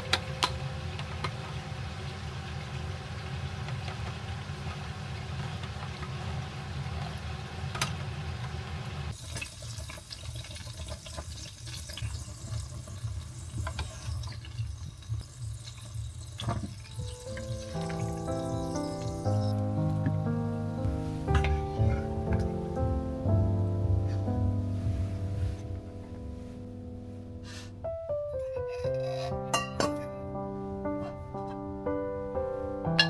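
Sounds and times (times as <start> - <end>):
tap water running into sink: 9.1 - 21.6.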